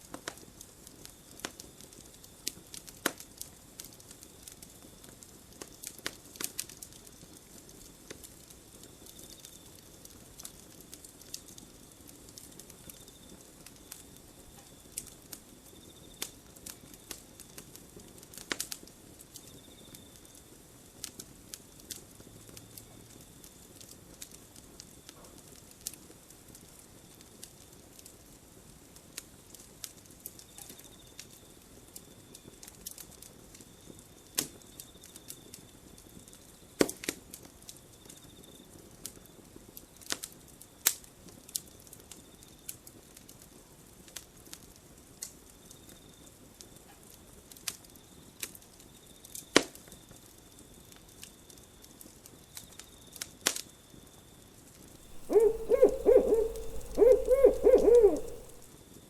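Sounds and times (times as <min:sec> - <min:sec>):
wood fire crackling and popping: 0:00.1 - 0:04.1, 0:05.5 - 0:12.9, 0:16.6 - 0:19.4
low hiss: 0:55.1 - 0:58.6.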